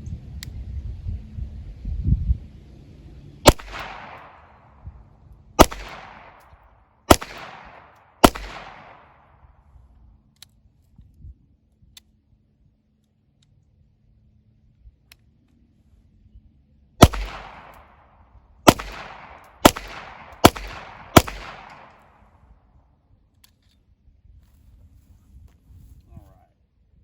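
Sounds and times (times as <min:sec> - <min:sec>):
pistol shots with echo: 0:03.5 - 0:04.7, 0:05.6 - 0:09.3, 0:17.0 - 0:22.2.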